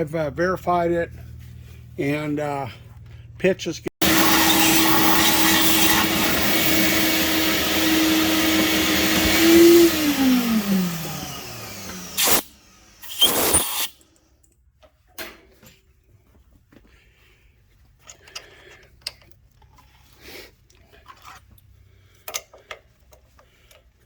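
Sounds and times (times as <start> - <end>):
electric motor whining: 4.0 - 14.0.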